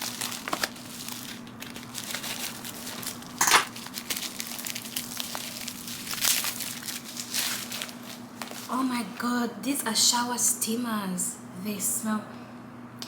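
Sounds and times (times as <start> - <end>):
loud plastic crunch: 0.0 - 8.7
plastic packaging crinkling: 0.0 - 8.8
faint steady hum: 0.0 - 13.0.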